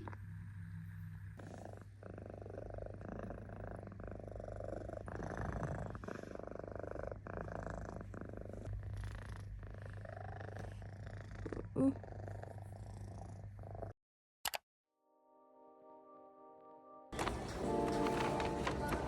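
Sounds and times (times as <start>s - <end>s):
cat purring: 0.0s - 14.0s.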